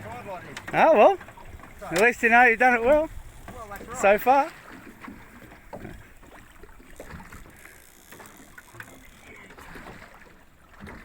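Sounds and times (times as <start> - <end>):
boat engine rumble: 0.0 - 11.0
small knocks and clicks: 1.8 - 2.2.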